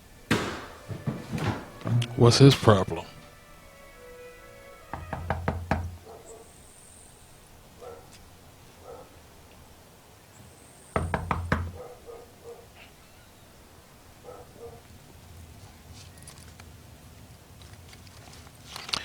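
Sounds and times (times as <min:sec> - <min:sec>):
rapid knocks: 0:00.3 - 0:03.3, 0:05.0 - 0:06.0, 0:11.0 - 0:11.8.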